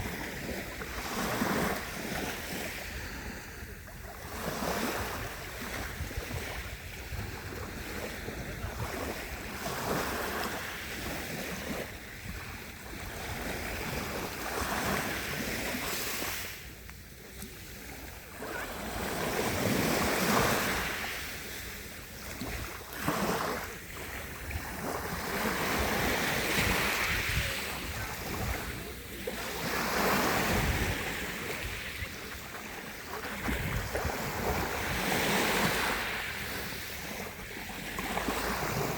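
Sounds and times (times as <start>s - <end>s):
sea waves breaking on shore: 0.0s - 38.9s
wind buffeting microphone: 4.8s - 9.4s, 24.2s - 29.0s, 30.0s - 32.2s, 33.3s - 36.0s.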